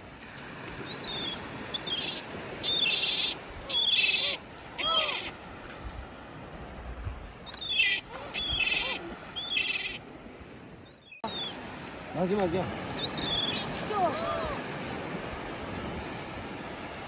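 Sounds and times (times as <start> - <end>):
gulls calling: 0.8 - 5.5, 7.4 - 10.2, 10.8 - 14.8.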